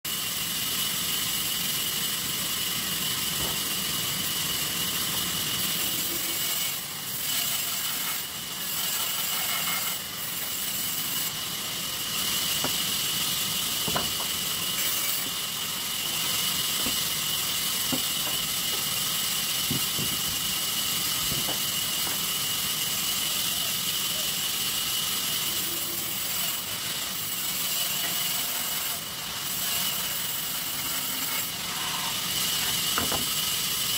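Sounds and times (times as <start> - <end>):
high saw whine: 0.1 - 33.9
saw cutting wood: 0.1 - 33.9.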